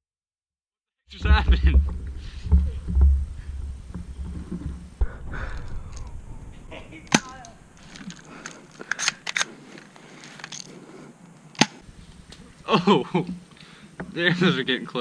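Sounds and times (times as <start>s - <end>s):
pellets landing: 1.2s - 9.4s
airsoft gun snaps: 11.6s - 12.4s.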